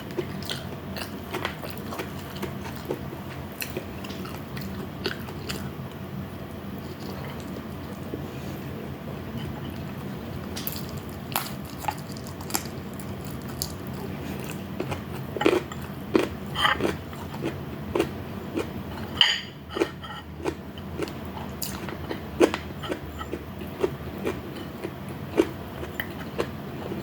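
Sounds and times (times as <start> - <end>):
steady low hum: 0.0 - 27.0
chewing and biting food: 9.4 - 27.0.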